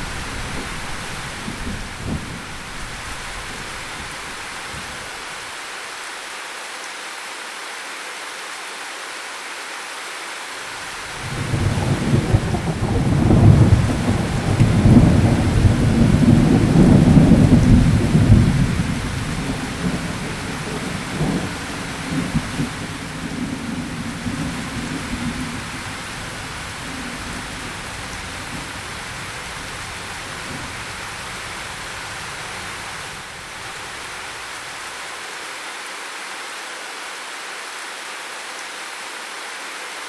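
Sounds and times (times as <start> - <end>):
thunder rumbling: 0.0 - 5.3, 11.0 - 34.5
steady rain falling: 0.0 - 40.0.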